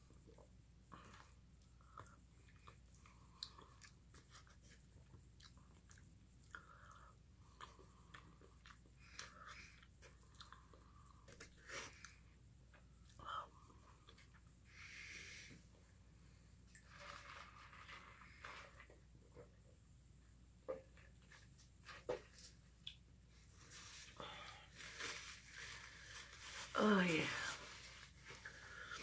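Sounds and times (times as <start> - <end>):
person chewing food: 0.1 - 14.5.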